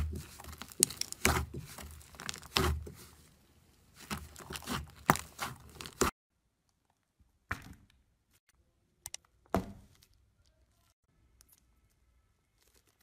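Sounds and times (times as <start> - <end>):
slime crackling: 0.0 - 3.2, 3.9 - 6.1, 9.9 - 13.0.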